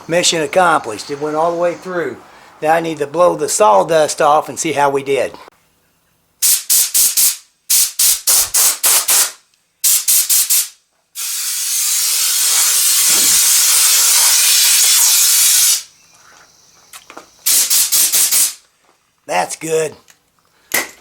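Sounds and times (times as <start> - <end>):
compressed air blow gun puffs: 6.4 - 16.4, 17.4 - 18.6.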